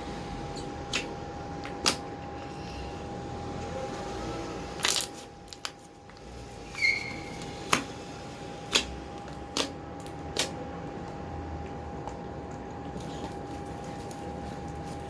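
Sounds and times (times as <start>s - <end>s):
faint steady hum: 0.0s - 15.0s
slime squeak: 6.6s - 7.6s.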